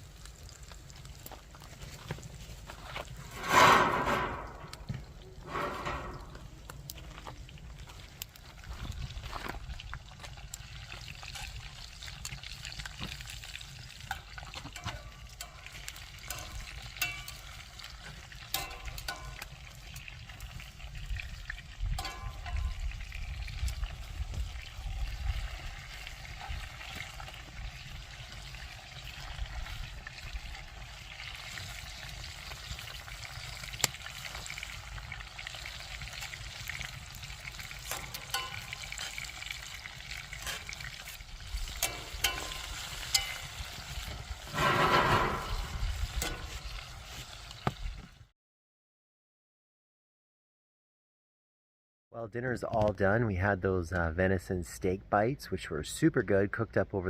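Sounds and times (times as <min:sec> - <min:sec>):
utensil scraping a pan: 0:03.0 - 0:06.6, 0:37.5 - 0:47.4
meat sizzling in a pan: 0:06.5 - 0:48.0.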